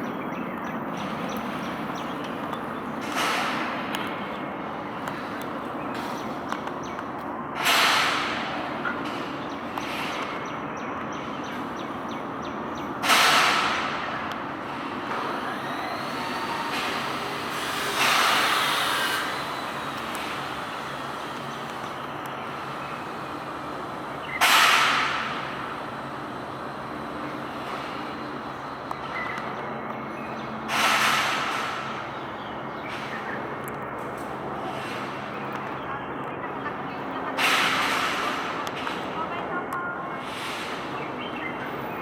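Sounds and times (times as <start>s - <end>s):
steady traffic hum: 0.0s - 42.0s
vehicles passing by: 0.0s - 42.0s.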